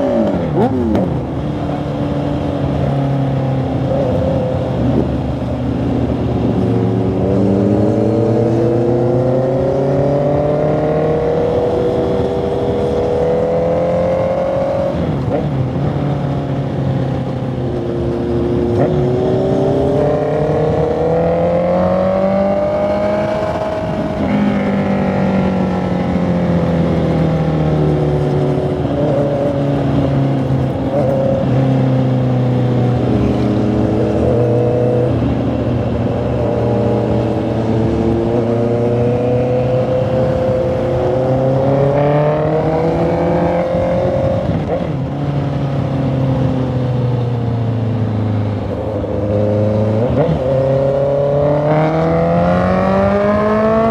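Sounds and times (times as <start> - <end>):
motorcycle engine accelerating: 0.0 - 53.9.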